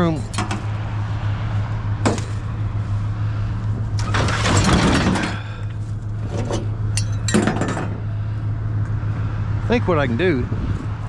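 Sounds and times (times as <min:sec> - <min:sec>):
scrap metal clattering: 0:00.0 - 0:00.8, 0:02.0 - 0:02.6, 0:04.0 - 0:08.0.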